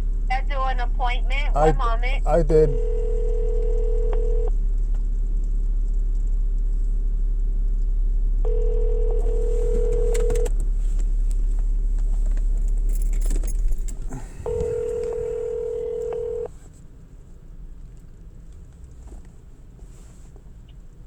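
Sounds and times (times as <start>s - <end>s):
steady low hum: 0.0s - 18.6s
telephone ringback tone: 2.7s - 4.5s, 8.5s - 10.5s, 14.4s - 16.5s.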